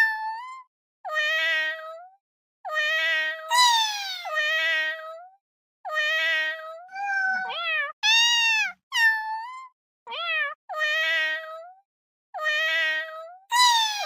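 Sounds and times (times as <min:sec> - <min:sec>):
cat meowing: 0:05.9 - 0:11.6, 0:12.4 - 0:14.0.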